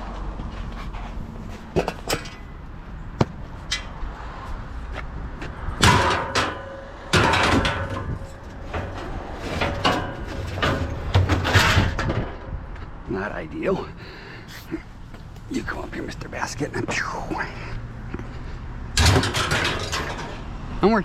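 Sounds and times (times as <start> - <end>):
junk knocking and clattering: 0.2 - 2.6, 5.4 - 12.9, 19.0 - 20.5.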